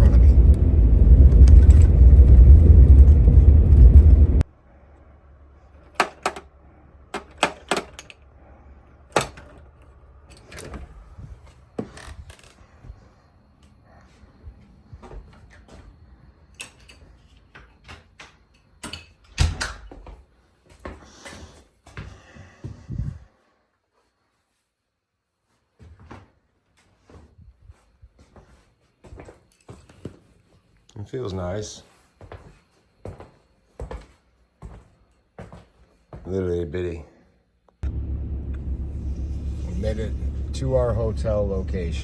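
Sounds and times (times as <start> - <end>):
vehicle road rumble: 0.0 - 12.5, 37.8 - 42.0
sharp clicks and knocks: 5.8 - 6.5, 7.1 - 8.2.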